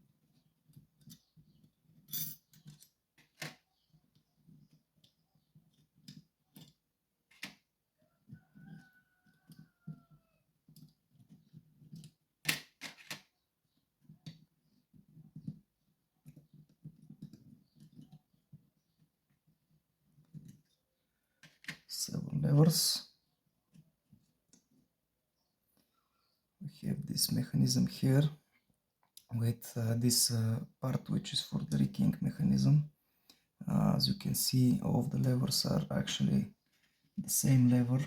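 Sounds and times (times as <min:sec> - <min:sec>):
small metal parts clicking and rattling: 0:00.7 - 0:03.6.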